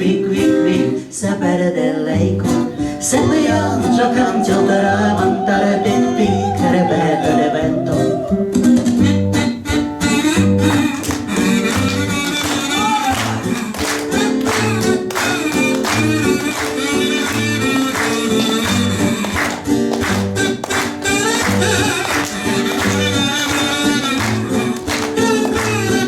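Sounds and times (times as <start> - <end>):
guitar accompaniment: 0.0 - 26.0.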